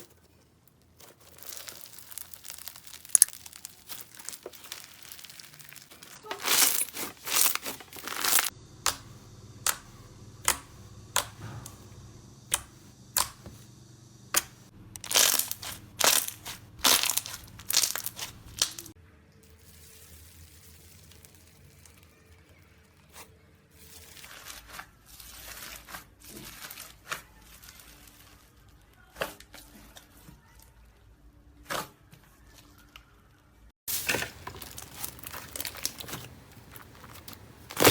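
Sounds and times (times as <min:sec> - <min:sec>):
slime crackling and snapping: 0:01.0 - 0:09.0, 0:14.4 - 0:18.9, 0:34.4 - 0:37.9.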